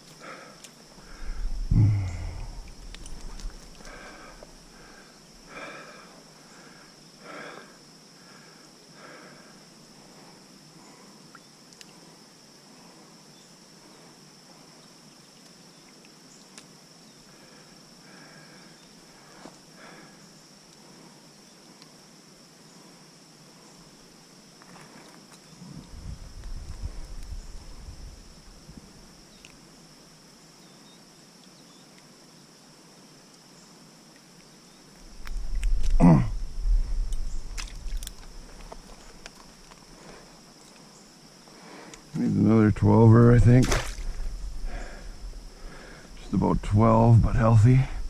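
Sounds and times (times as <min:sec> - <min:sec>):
insect trill: 0:00.0 - 0:48.0
low even hiss: 0:00.0 - 0:48.0
low rumble: 0:01.2 - 0:03.8
faint clicks: 0:02.6 - 0:04.5, 0:11.3 - 0:12.0.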